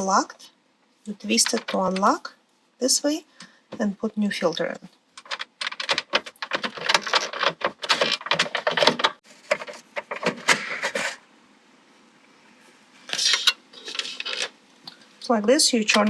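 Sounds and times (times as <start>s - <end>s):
plastic filter clicking and rubbing: 5.2s - 11.2s, 13.1s - 14.5s.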